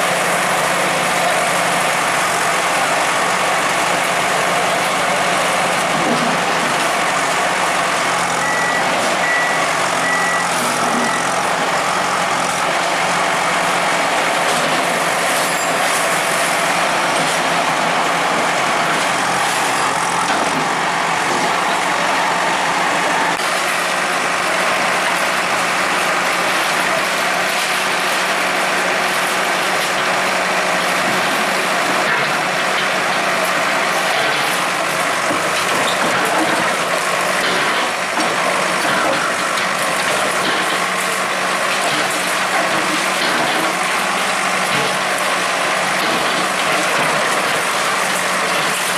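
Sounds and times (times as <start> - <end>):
bulldozer diesel engine: 0.0 - 48.9
high beeps: 8.4 - 11.3.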